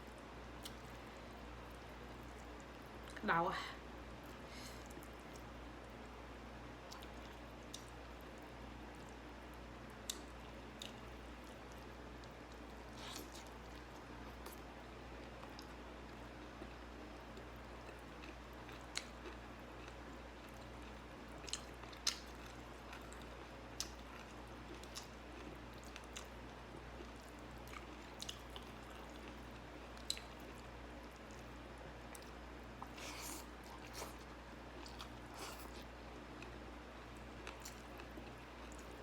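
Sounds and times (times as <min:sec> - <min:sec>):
faint steady hum: 0:00.0 - 0:39.0
person chewing crunchy food: 0:10.1 - 0:14.6, 0:16.4 - 0:36.6.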